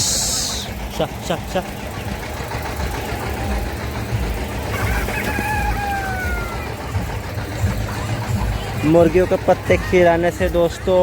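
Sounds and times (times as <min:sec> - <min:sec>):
steady low rumble: 0:00.0 - 0:11.0
rooster crowing: 0:04.7 - 0:07.1.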